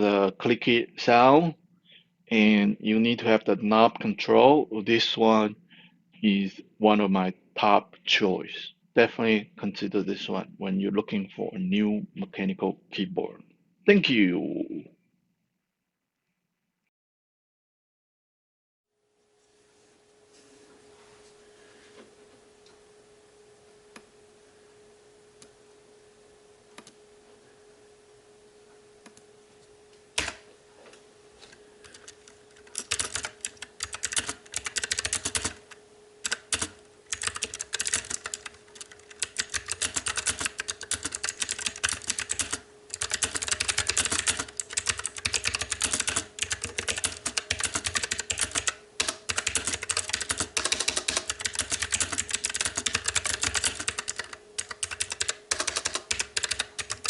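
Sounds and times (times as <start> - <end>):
faint steady hum: 0.0 - 16.3, 18.9 - 57.0
clicky keyboard typing: 31.8 - 35.6, 36.2 - 57.0.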